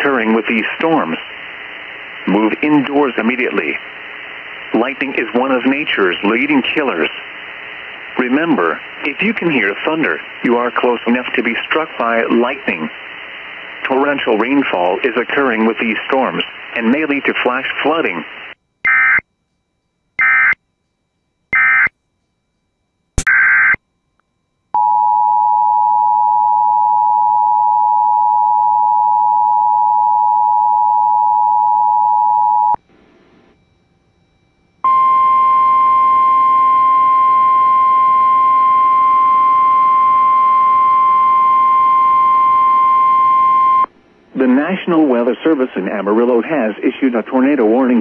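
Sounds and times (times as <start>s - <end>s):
steady warning alarm tone: 18.6s - 32.8s, 33.5s - 43.9s
digital data tone bursts: 20.2s - 20.6s, 21.5s - 21.9s
two-tone attention signal: 21.6s - 21.9s.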